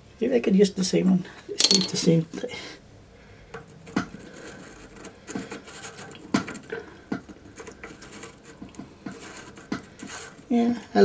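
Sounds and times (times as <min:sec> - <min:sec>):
small parts clicking and tapping: 0:01.6 - 0:02.0.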